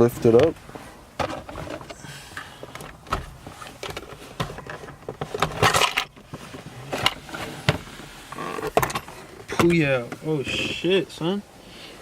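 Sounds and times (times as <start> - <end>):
scraping rustle: 1.3 - 4.8, 8.2 - 8.9
plastic trim clicks and knocks: 2.8 - 4.5.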